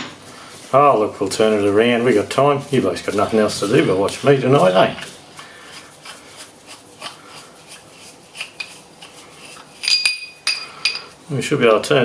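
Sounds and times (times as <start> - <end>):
metal parts rubbing: 1.3 - 11.2
metallic clinks: 9.8 - 11.2.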